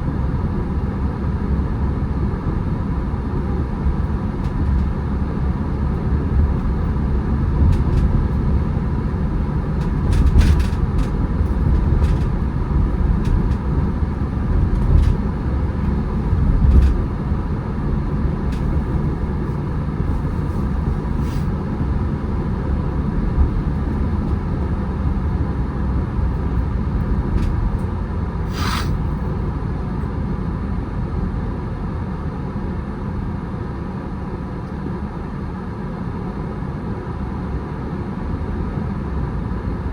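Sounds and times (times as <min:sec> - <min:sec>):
car road and engine rumble: 0:00.0 - 0:39.9
short sharp hiss: 0:28.4 - 0:29.2.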